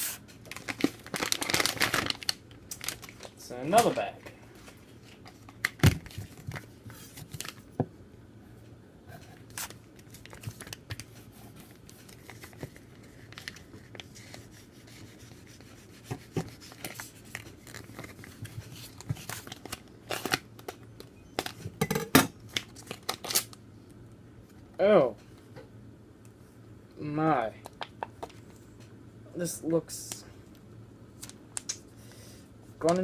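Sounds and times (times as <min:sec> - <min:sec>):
plastic snack packaging crinkling: 0:00.4 - 0:04.0, 0:22.5 - 0:23.6.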